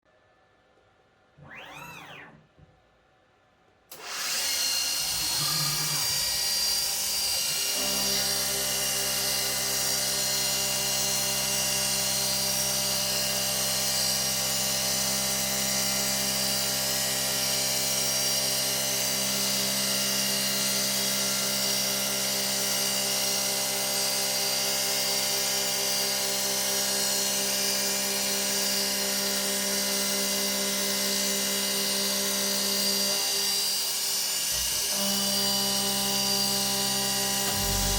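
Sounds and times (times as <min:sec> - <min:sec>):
machine hum: 0:37.4 - 0:37.9
spindle whine: 0:37.5 - 0:37.9.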